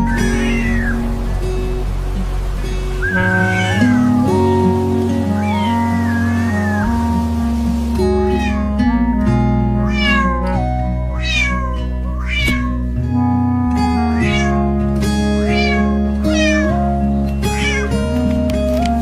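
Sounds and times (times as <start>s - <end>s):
cat meowing: 0.0s - 1.1s, 3.0s - 4.3s, 5.2s - 7.2s, 8.3s - 9.0s, 9.8s - 12.9s, 14.0s - 14.7s, 15.4s - 16.9s, 17.5s - 18.0s
background music: 0.0s - 19.0s.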